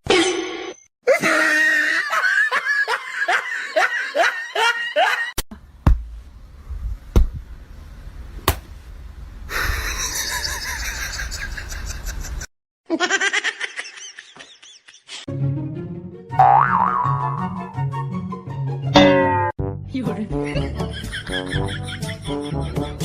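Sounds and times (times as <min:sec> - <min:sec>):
person laughing: 0:01.1 - 0:05.4, 0:09.5 - 0:15.3
sharp knocks: 0:05.8 - 0:06.2, 0:08.4 - 0:08.7.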